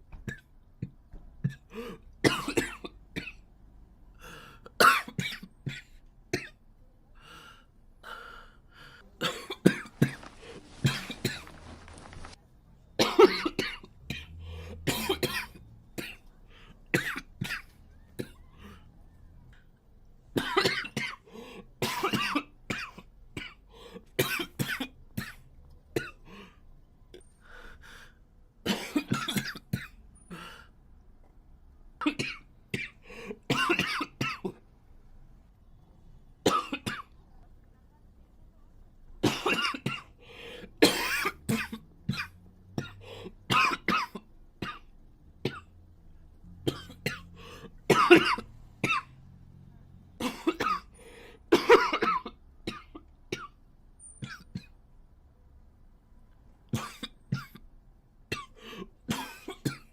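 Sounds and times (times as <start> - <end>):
boy coughing: 9.2 - 12.3, 47.9 - 49.0, 51.5 - 52.9.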